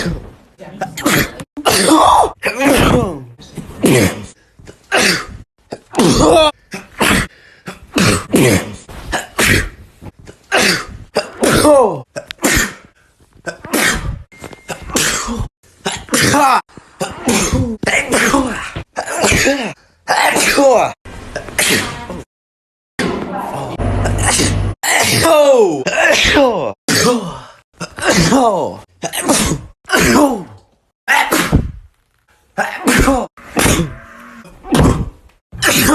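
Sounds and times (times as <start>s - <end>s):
person sneezing: 3.8s - 9.8s, 24.1s - 31.8s, 32.6s - 34.0s.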